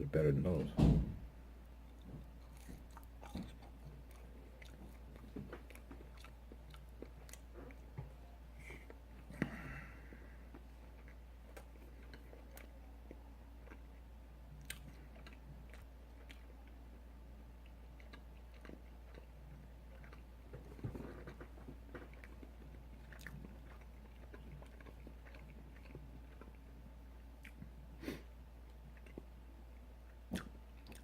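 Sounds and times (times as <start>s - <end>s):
steady low hum: 0.0s - 31.0s
chewing and biting food: 1.8s - 27.8s, 28.6s - 29.4s, 30.0s - 31.0s
mouth clicks and smacks: 30.3s - 31.0s.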